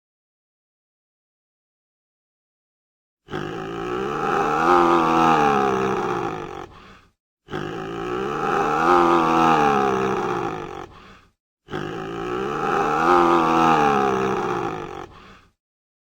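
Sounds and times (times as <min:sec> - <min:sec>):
wild animal roaring: 0:03.3 - 0:06.8, 0:07.5 - 0:11.0, 0:11.7 - 0:15.2.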